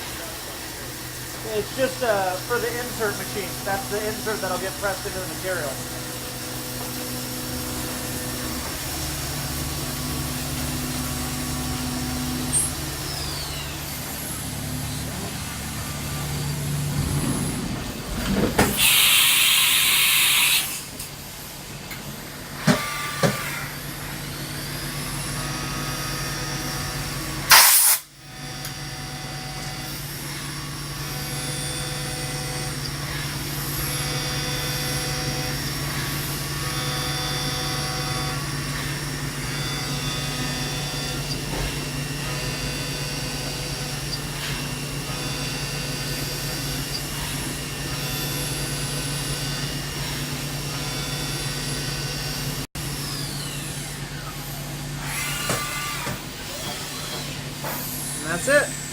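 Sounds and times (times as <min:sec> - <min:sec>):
milling machine humming and whining: 0:00.0 - 0:58.9
air hissing: 0:18.6 - 0:21.0, 0:27.5 - 0:28.1.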